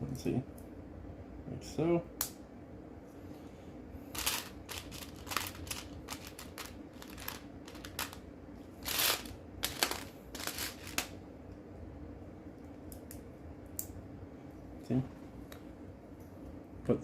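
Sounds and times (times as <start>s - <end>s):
rustling scrapes: 4.1s - 8.2s, 8.8s - 11.1s
plastic bricks clicking and rattling: 4.2s - 8.2s.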